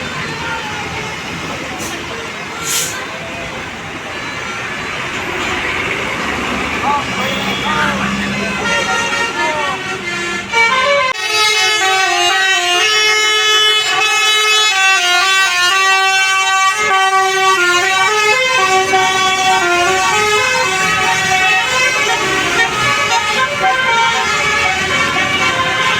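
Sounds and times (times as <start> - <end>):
bus air horn playing a tune: 7.2 - 25.9.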